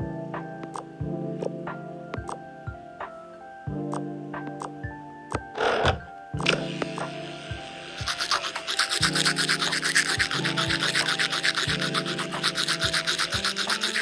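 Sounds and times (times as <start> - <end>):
background music: 0.0 - 14.0
toothbrush scrubbing: 8.0 - 14.0.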